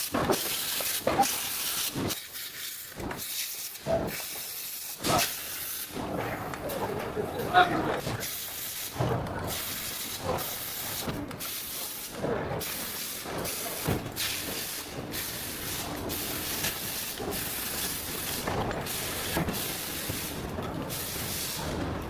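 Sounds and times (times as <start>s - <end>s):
steady machine hiss: 8.2s - 21.7s.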